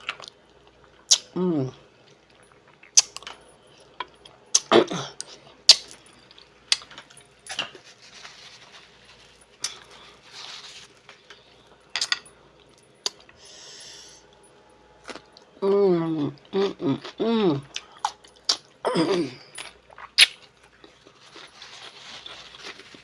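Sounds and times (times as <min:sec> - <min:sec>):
mouth eating noises: 0:01.0 - 0:01.8, 0:15.0 - 0:20.9.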